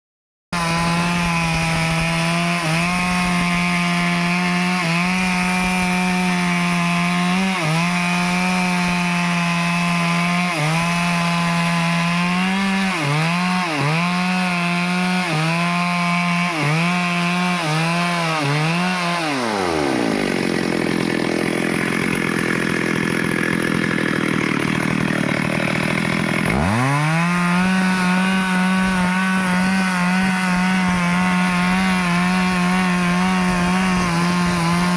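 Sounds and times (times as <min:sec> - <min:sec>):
chainsaw cutting a tree: 0:00.6 - 0:34.9.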